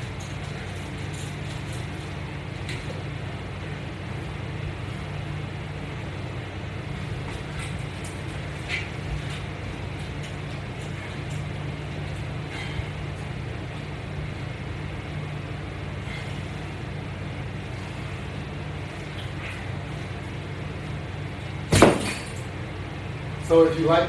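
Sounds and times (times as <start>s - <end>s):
low background hum: 0.0s - 24.0s
loud thump: 21.7s - 22.2s.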